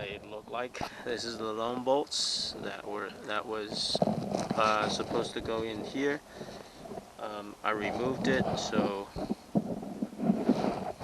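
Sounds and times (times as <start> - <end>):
light knocks and rustles: 1.7 - 7.1.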